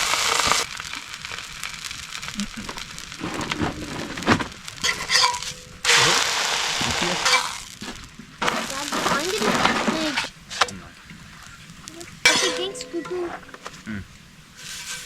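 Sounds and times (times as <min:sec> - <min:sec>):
food sizzling on a hot pan: 0:00.0 - 0:15.0
cookware clicking and knocking: 0:12.3 - 0:13.8.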